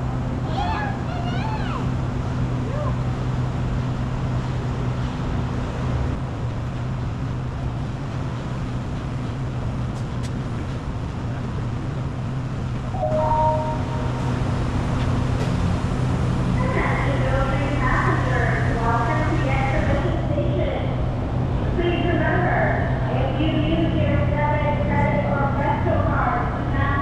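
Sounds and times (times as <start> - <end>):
diesel locomotive idling: 10.5 - 27.0
two-note electronic tone: 13.0 - 14.7.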